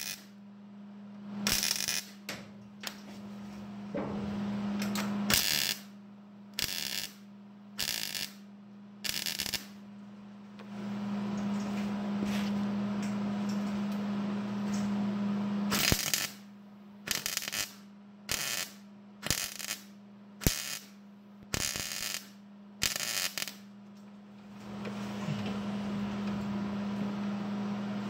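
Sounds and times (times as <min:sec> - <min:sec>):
crackling welding arc: 0:00.0 - 0:00.4, 0:01.4 - 0:02.2, 0:04.9 - 0:05.9, 0:06.6 - 0:08.4, 0:09.0 - 0:09.8, 0:15.7 - 0:16.4, 0:17.1 - 0:23.7
steady hum: 0:00.0 - 0:28.0.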